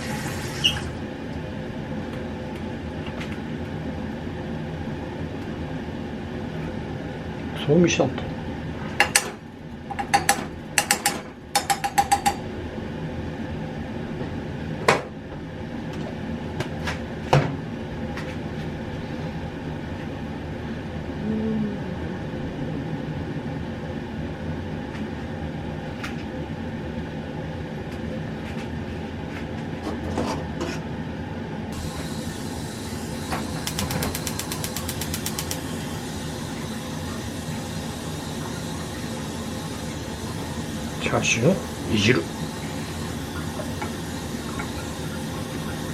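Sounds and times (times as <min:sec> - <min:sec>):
low kitchen hum: 0:00.0 - 0:45.9
gas stove igniter clicking: 0:31.8 - 0:36.1.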